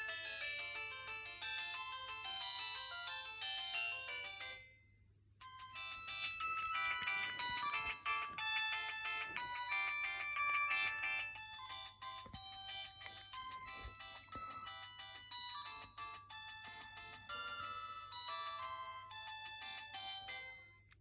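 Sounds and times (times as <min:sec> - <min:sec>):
electronic ringtone melodies: 0:05.4 - 0:20.8.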